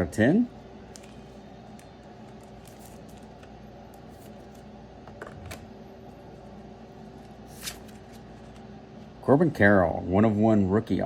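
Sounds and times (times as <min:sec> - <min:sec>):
low room hum: 0:00.0 - 0:11.0
trading cards rustling and clicking: 0:00.9 - 0:04.6.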